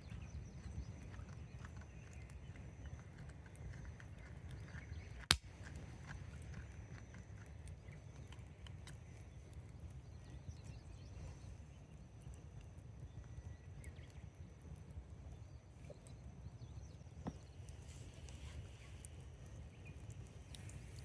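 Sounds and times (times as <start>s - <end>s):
campfire crackling and popping: 4.5s - 10.2s, 19.0s - 21.0s.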